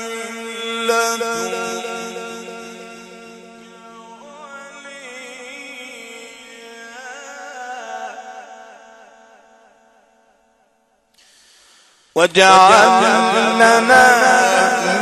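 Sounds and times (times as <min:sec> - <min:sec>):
man reciting melodically: 0:00.0 - 0:09.2, 0:12.2 - 0:15.0.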